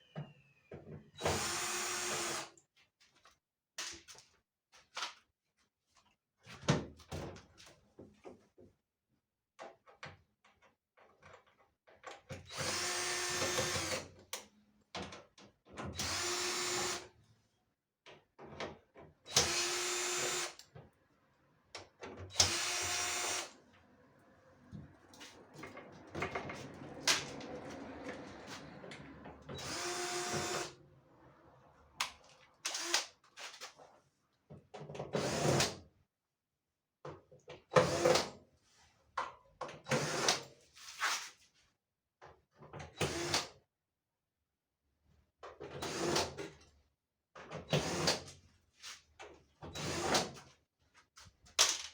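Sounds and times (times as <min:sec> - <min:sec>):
cordless drill spinning: 0:01.2 - 0:02.5, 0:12.5 - 0:14.0, 0:16.0 - 0:17.1, 0:19.3 - 0:20.6, 0:22.3 - 0:23.6, 0:29.5 - 0:30.8, 0:32.7 - 0:33.0.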